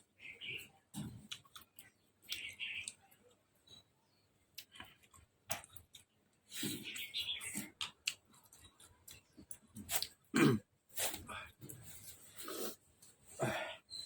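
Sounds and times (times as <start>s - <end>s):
wet chewing and slurping: 4.6s - 10.3s, 10.9s - 13.2s.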